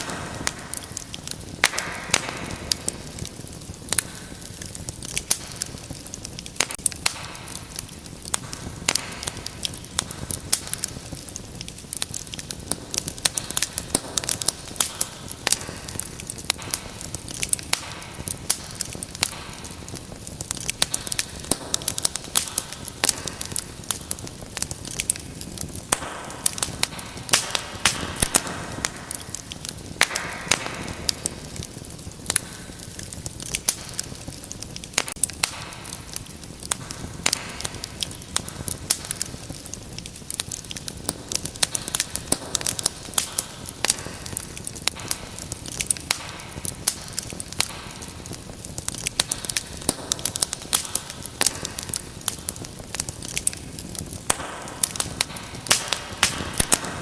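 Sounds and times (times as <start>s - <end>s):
low rush of flames: 0.0s - 57.0s
sharp pops and snaps: 0.0s - 57.0s
wood fire crackling: 0.0s - 57.0s.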